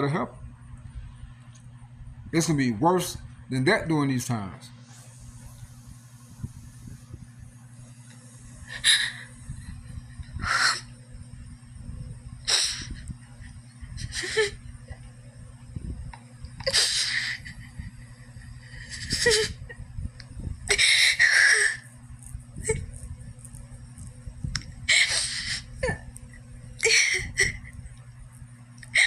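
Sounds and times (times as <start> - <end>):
steady low hum: 0.0 - 29.0
person crying with gasping sobs: 8.7 - 10.9, 12.5 - 14.7, 16.6 - 19.8, 20.7 - 21.9, 24.9 - 26.2, 26.8 - 27.8.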